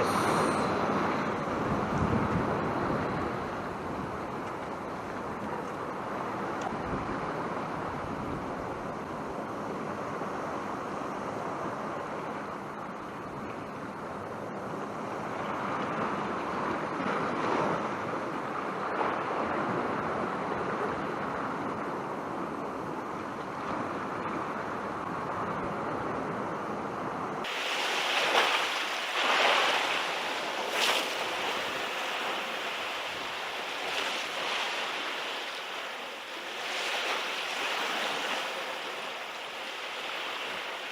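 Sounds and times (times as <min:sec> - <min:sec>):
wind buffeting microphone: 0:00.0 - 0:10.5
waves breaking against rocks: 0:27.4 - 0:40.9.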